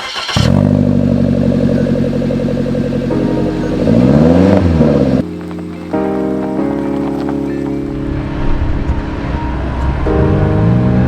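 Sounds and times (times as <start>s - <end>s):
engine revving: 0.0s - 6.4s.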